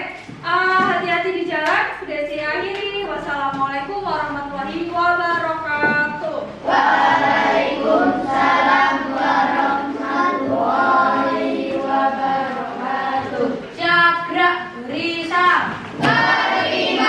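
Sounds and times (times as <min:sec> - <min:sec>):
children singing in unison: 0:06.6 - 0:13.8, 0:15.9 - 0:17.0.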